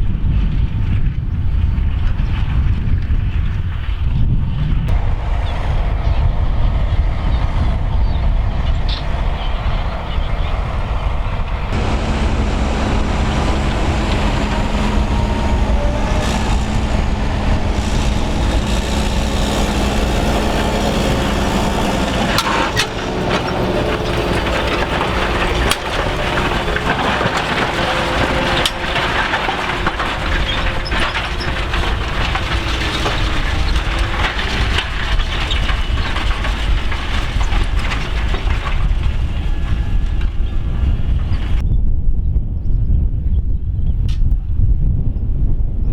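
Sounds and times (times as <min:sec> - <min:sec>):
wind rumbling on microphone: 0:00.0 - 0:45.9
tractor diesel engine under load: 0:04.4 - 0:41.6
sharp clicks and cracks: 0:11.7 - 0:40.4.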